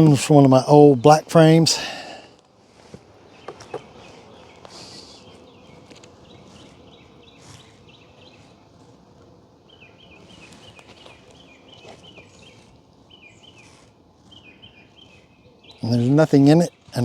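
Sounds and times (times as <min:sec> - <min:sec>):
honeybees humming: 0:00.0 - 0:17.0
songbird chirping: 0:00.0 - 0:17.0
light knocks of hive frames: 0:02.9 - 0:09.4.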